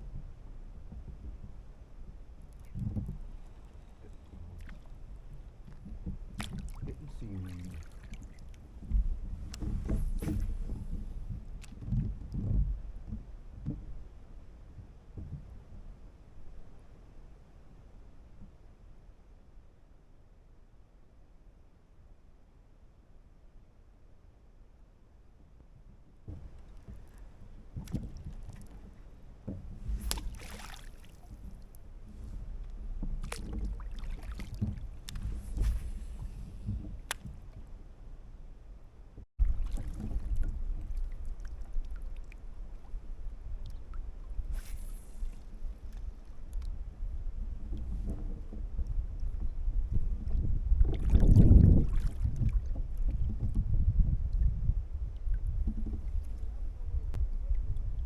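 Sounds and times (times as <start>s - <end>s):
water splashing around kayak: 0.0s - 16.6s, 26.2s - 38.4s, 39.1s - 58.0s
wind rumbling on microphone: 0.0s - 17.0s, 25.9s - 58.0s
kayak clicks and knocks: 5.6s - 7.0s, 8.5s - 13.9s, 32.6s - 37.7s
water splash: 6.4s - 8.5s, 29.9s - 31.5s, 33.2s - 35.9s, 39.4s - 42.4s.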